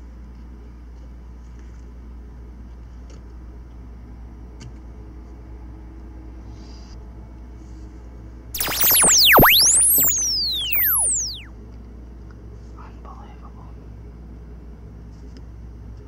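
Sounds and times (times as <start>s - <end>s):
electronic whistling tone sweeps: 8.6s - 11.5s.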